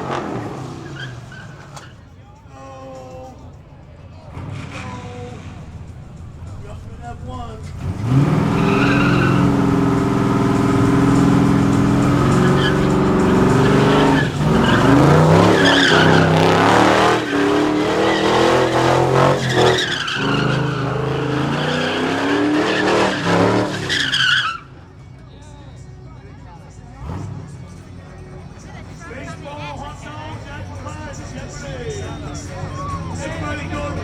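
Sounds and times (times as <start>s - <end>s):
tyre squeal: 0.0s - 2.2s, 7.6s - 24.8s
car engine revving: 0.0s - 25.9s, 26.7s - 34.0s.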